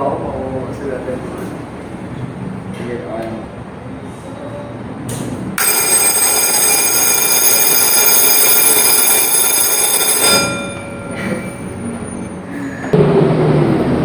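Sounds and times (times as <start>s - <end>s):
fire alarm bell ringing: 5.6s - 12.4s.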